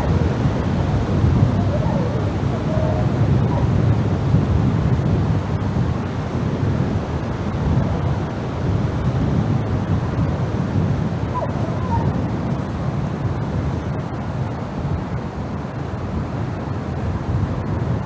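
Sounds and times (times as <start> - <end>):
strong gusty wind: 0.0 - 18.0.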